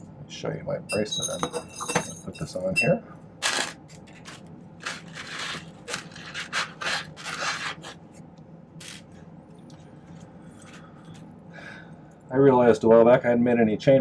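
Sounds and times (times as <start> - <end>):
chain bracelet links scraping: 1.1 - 8.0, 8.8 - 9.1.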